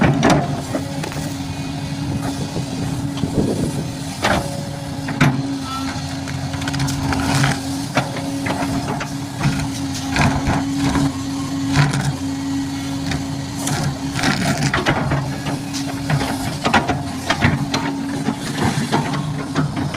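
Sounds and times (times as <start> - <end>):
heavy machinery engine hum: 0.0 - 19.9.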